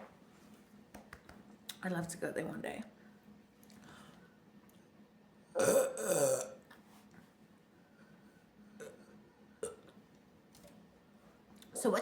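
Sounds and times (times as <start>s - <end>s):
woman burping: 5.6s - 6.6s, 8.8s - 9.9s.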